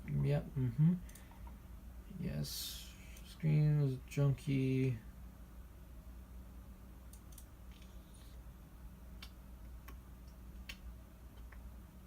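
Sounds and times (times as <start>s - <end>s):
low electrical hum: 0.0s - 12.0s
computer mouse clicks: 7.1s - 8.0s.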